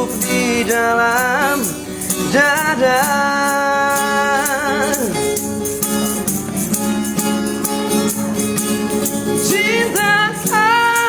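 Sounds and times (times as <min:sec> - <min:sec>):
person singing: 0:00.0 - 0:05.5, 0:09.3 - 0:11.0
guitar accompaniment: 0:00.0 - 0:11.0
shaken rattling beat: 0:00.0 - 0:11.0.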